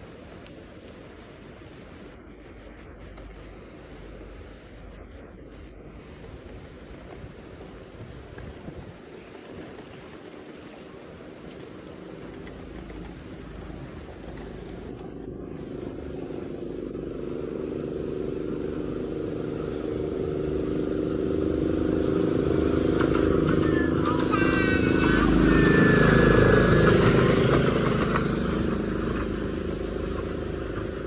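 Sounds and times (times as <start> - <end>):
vehicle engine running: 0.0 - 31.0.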